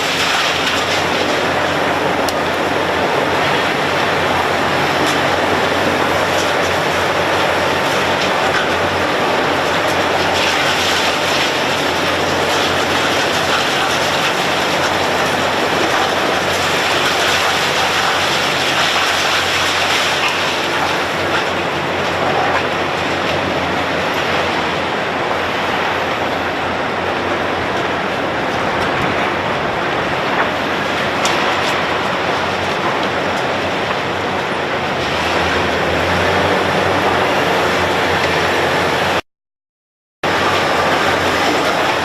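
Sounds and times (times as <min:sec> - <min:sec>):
heavy machinery running: 0:00.0 - 0:39.2, 0:40.2 - 0:42.0.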